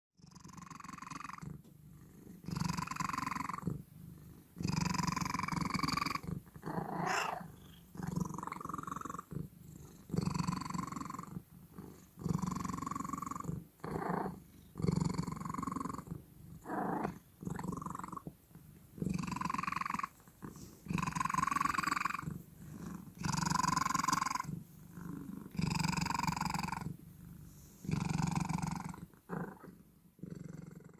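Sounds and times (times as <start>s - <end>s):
cat purring loudly: 0.2s - 30.9s.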